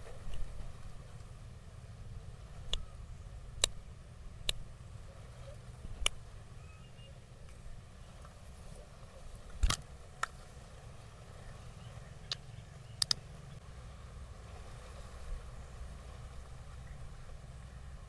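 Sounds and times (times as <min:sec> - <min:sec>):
low steady rumble: 0:00.0 - 0:18.0
sharp cracks and clicks: 0:09.6 - 0:10.4, 0:13.0 - 0:13.2.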